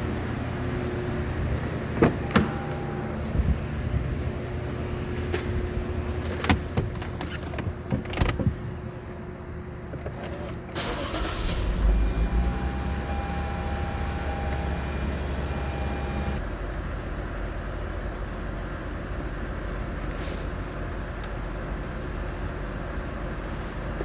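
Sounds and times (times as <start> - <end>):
car engine idling with misfire: 10.1 - 24.0.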